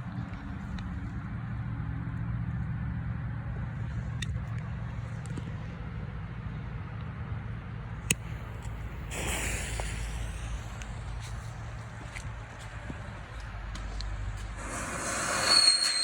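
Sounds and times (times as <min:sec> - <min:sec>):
low engine-like hum: 0:00.0 - 0:16.0
loud hissing: 0:08.1 - 0:12.5, 0:14.4 - 0:16.0
firecracker crack: 0:08.1 - 0:13.4, 0:14.6 - 0:16.0.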